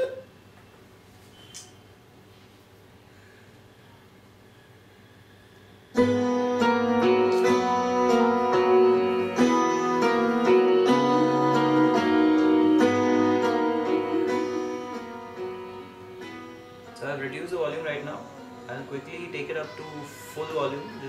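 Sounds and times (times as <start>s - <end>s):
piano music from a small speaker: 6.0s - 21.0s.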